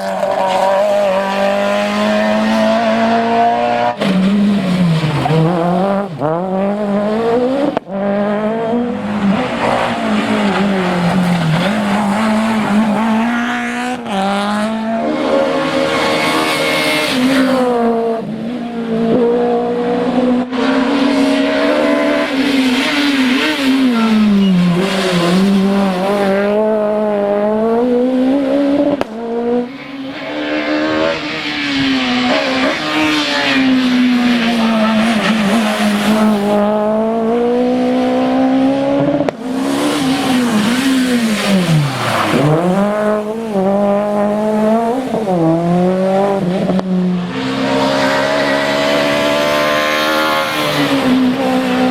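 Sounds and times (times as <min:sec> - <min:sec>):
rally car engines revving: 0:00.0 - 0:51.9
tyre squeal: 0:22.7 - 0:26.0.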